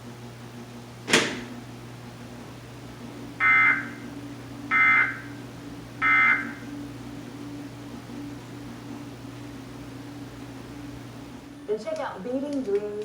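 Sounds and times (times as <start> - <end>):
steady low hum: 0.0 - 13.0
sharp click: 1.1 - 1.5.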